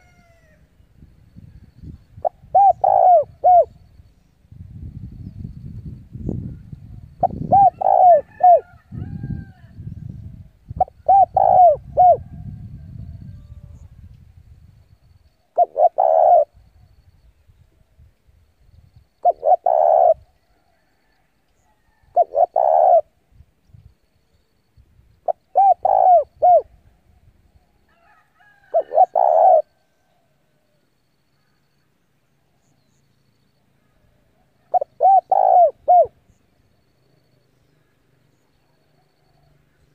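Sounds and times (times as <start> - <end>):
dove cooing: 2.2 - 3.8, 6.9 - 9.4, 10.7 - 13.7, 15.6 - 16.9, 19.2 - 20.4, 22.0 - 23.2, 25.3 - 26.8, 28.7 - 29.8, 34.6 - 36.4.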